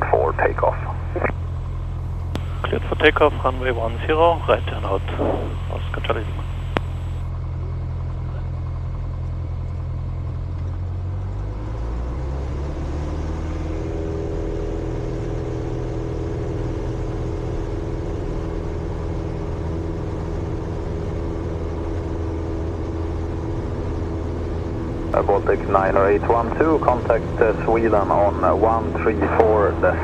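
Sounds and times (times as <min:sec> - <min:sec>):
propeller plane engine at full power: 0:00.0 - 0:15.0, 0:24.8 - 0:30.0.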